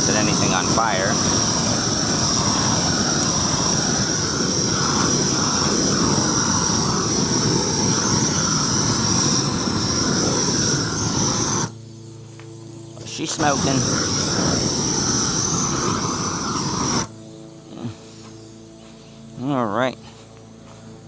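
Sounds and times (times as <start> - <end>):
gas torch flame rushing: 0.0 - 11.8, 13.0 - 17.2.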